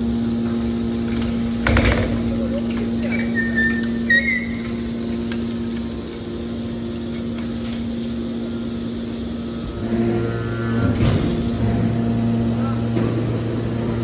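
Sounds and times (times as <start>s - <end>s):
baler machine hum: 0.0s - 14.0s.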